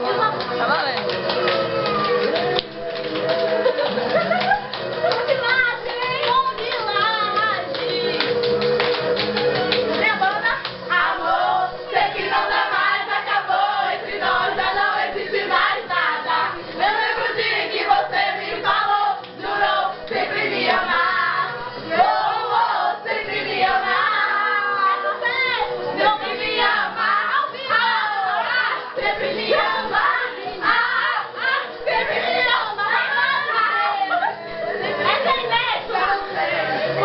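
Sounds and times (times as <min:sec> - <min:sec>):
group of voices singing: 0:00.0 - 0:37.0
rapid hand claps: 0:00.2 - 0:10.9.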